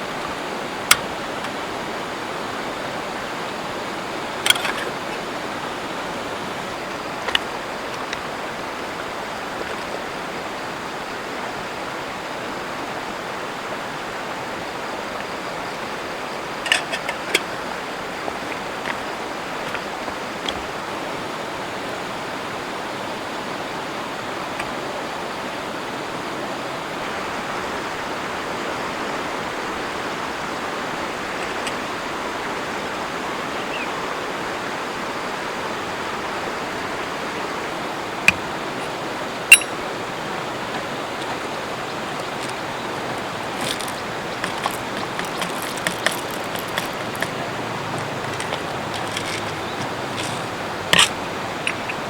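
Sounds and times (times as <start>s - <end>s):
river water rushing: 0.0s - 52.0s
small clicks and crackles: 42.1s - 52.0s
sharp clicks: 42.2s - 52.0s.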